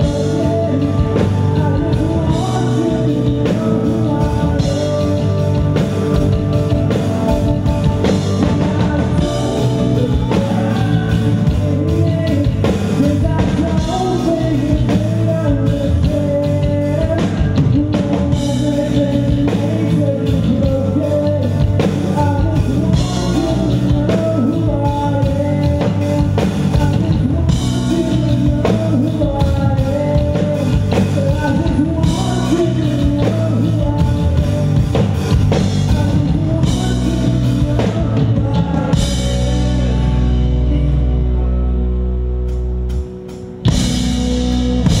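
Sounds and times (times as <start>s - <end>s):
person singing: 0.0s - 43.8s
drum kit: 0.0s - 45.0s
electric guitars: 0.0s - 45.0s.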